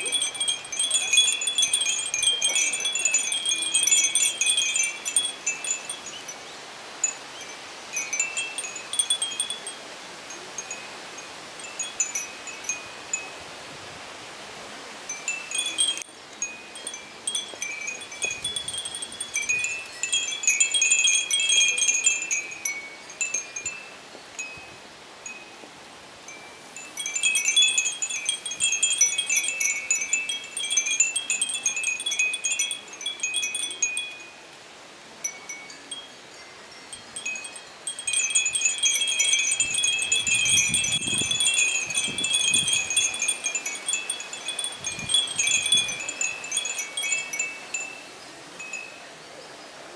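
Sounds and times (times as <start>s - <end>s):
wind chimes tinkling: 0.0s - 13.6s, 15.0s - 49.7s.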